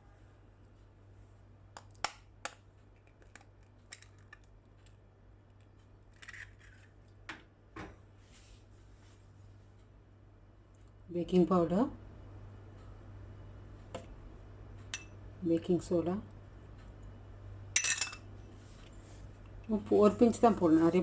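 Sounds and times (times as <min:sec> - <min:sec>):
soft scrapes: 0:08.2 - 0:09.6, 0:18.5 - 0:19.4.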